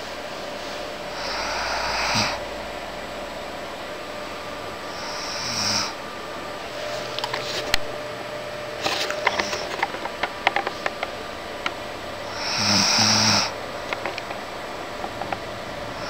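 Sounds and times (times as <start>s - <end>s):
person snoring: 1.1s - 2.4s, 4.9s - 6.0s, 12.3s - 13.6s.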